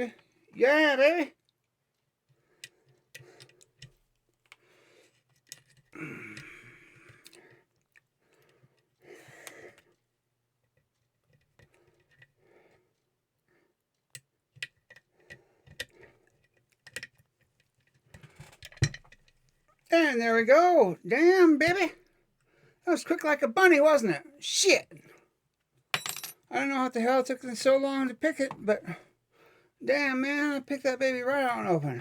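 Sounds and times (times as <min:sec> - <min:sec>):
breathy noises: 0:06.0 - 0:07.7.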